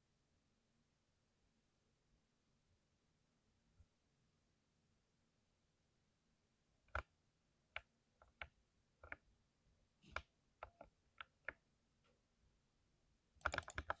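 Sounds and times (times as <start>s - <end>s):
mechanical keyboard keystrokes: 13.4s - 14.0s.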